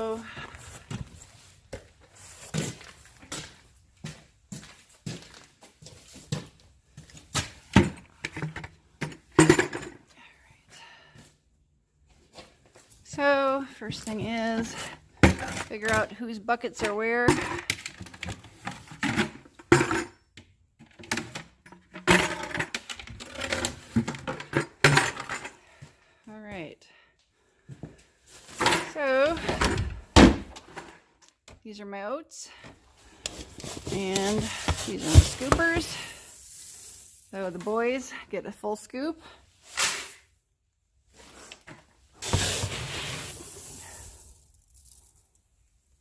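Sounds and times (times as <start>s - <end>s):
buckets knocking and clattering: 7.4s - 10.1s, 13.9s - 16.2s, 16.8s - 20.2s, 20.8s - 25.5s, 28.6s - 31.0s, 33.2s - 38.0s.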